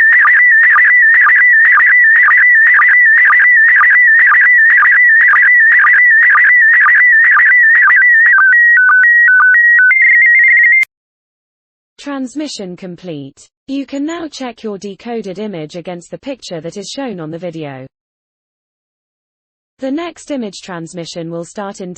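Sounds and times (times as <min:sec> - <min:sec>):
warbling electronic tone: 0:00.0 - 0:10.8
short sync beeps: 0:00.0 - 0:10.9.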